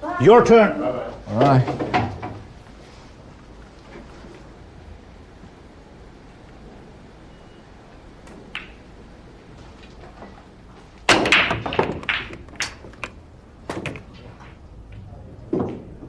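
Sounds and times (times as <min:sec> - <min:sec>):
pool balls clacking: 0:01.3 - 0:02.7, 0:08.0 - 0:16.0
cue tapping ball: 0:08.2 - 0:09.0, 0:11.1 - 0:16.0.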